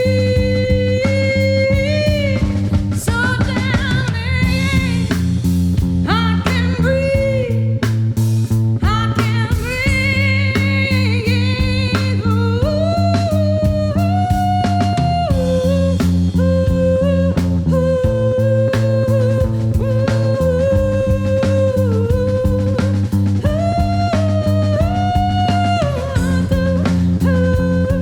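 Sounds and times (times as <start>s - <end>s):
bass guitar: 0.0s - 28.0s
drums keeping a steady beat: 0.0s - 28.0s.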